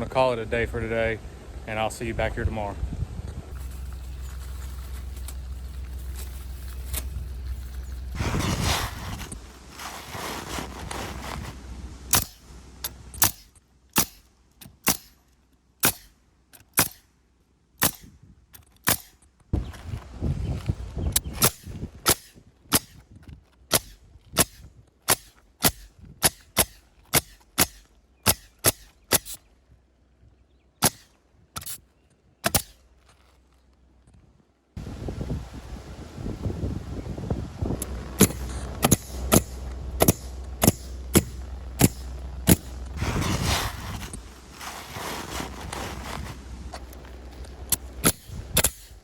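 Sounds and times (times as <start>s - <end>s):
nailer firing into shingles: 12.1s - 15.2s, 15.8s - 17.1s, 17.8s - 19.2s, 21.3s - 23.1s, 23.7s - 29.4s, 30.8s - 31.8s, 32.4s - 32.8s, 38.2s - 43.9s, 47.7s - 49.0s.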